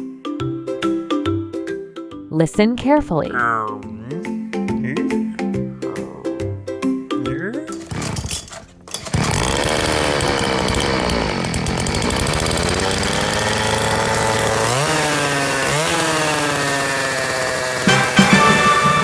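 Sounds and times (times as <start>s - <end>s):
motorcycle engine revving: 9.0s - 19.0s.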